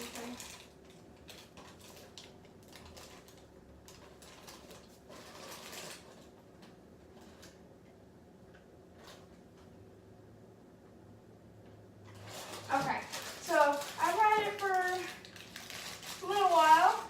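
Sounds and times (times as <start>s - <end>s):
rustling: 0.0s - 7.6s, 12.1s - 17.0s.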